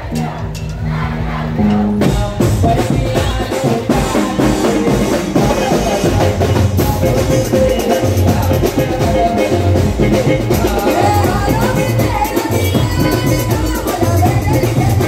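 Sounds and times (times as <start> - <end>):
bass drum and snare beat: 0.0 - 15.0
live band instrumental: 0.0 - 15.0.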